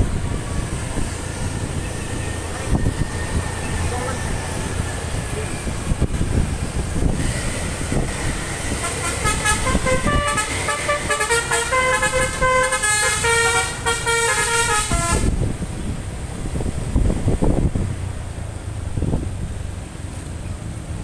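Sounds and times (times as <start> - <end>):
traffic: 0.0 - 21.0
wind rumble: 0.0 - 21.0
bus multi-tone horn tune: 7.2 - 15.4.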